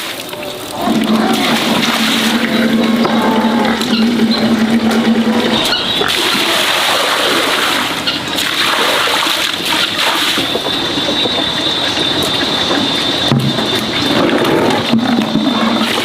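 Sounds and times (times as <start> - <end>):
water splashing and running: 0.0 - 10.6
thin high tone: 0.8 - 5.9.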